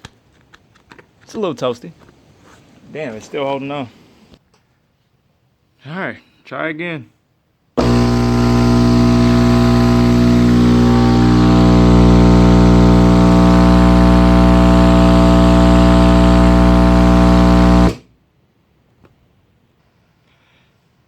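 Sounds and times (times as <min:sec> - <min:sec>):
subwoofer mains hum buzz: 0:07.8 - 0:18.2.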